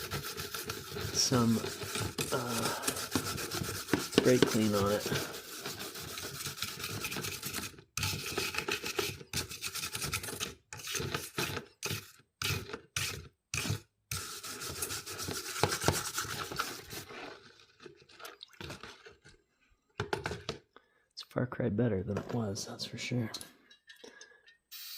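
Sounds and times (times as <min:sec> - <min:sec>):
scrubbing metal grate: 0:00.0 - 0:17.2.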